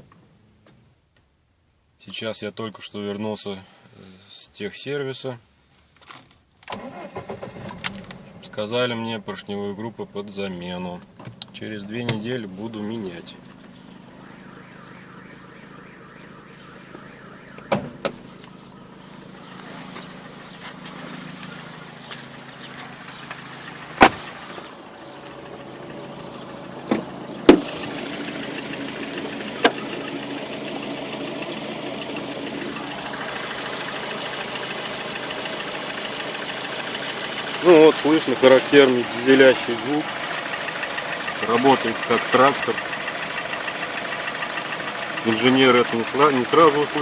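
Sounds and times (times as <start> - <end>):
car engine idling with clatter: 6.8 - 47.0
sharp clunks: 24.0 - 24.6.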